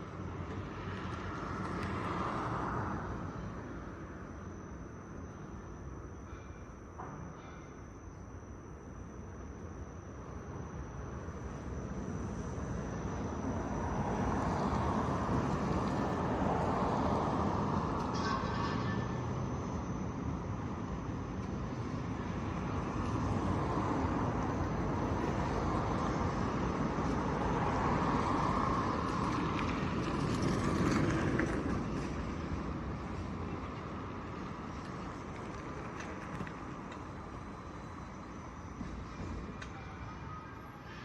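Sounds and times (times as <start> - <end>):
heavy construction machinery running: 8.8 - 41.0.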